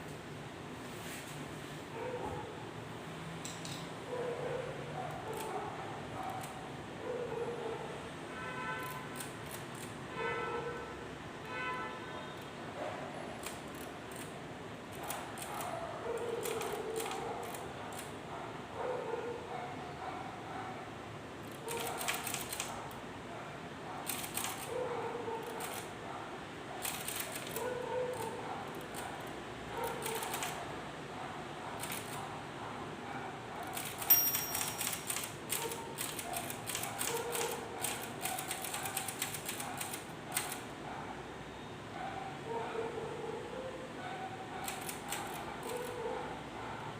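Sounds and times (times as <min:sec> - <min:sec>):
manual typewriter clicking: 0:08.8 - 0:10.0, 0:13.4 - 0:18.1, 0:21.4 - 0:23.0, 0:24.0 - 0:24.7, 0:25.4 - 0:25.9, 0:26.8 - 0:29.0, 0:29.8 - 0:30.6, 0:31.8 - 0:32.2, 0:33.7 - 0:40.6, 0:44.6 - 0:46.0.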